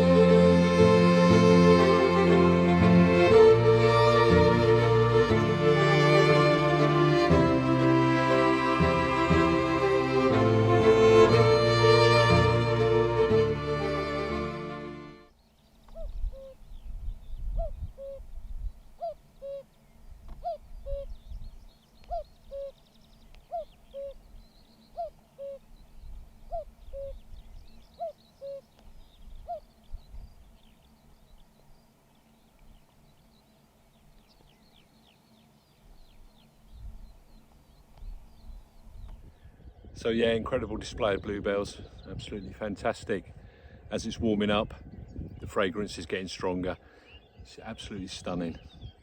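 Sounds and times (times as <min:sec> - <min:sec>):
songbirds chirping: 0:00.0 - 0:49.0
cuckoo calling: 0:15.8 - 0:16.8, 0:17.4 - 0:18.3, 0:18.9 - 0:33.3.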